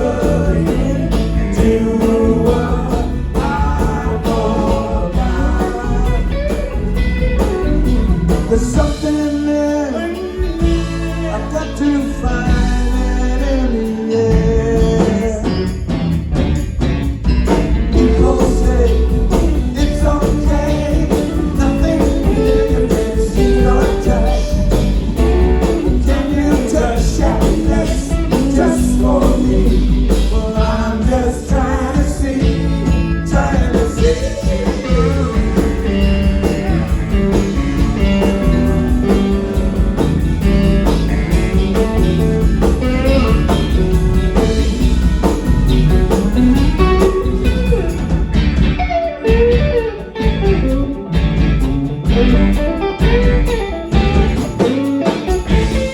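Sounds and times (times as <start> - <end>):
person singing: 0.0 - 7.0, 7.7 - 15.8, 17.9 - 39.6
rock band playing: 0.0 - 55.9.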